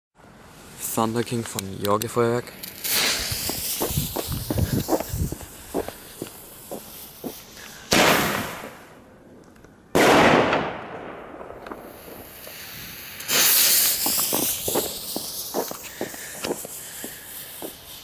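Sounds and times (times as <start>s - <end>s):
firecrackers exploding with echo: 2.7s - 5.6s, 6.4s - 9.0s, 9.9s - 18.0s.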